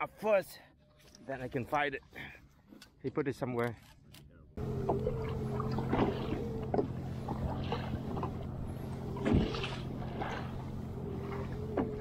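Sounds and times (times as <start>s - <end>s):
steady low hum: 4.6s - 12.0s
water sloshing against kayak: 4.6s - 12.0s
sharp knocks on hull: 9.2s - 10.3s.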